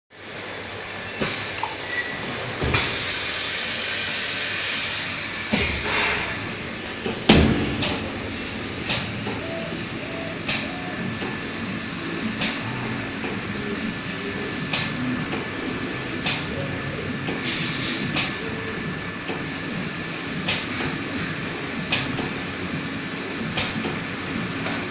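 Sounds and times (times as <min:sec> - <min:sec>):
sharp mechanical knocks: 0:07.1 - 0:09.4
spray machine hissing: 0:07.1 - 0:16.5, 0:19.4 - 0:24.9.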